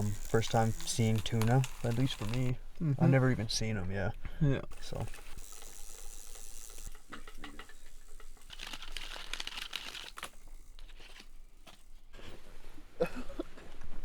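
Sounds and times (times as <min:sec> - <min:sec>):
small clicks: 0:00.0 - 0:02.6, 0:04.7 - 0:12.0.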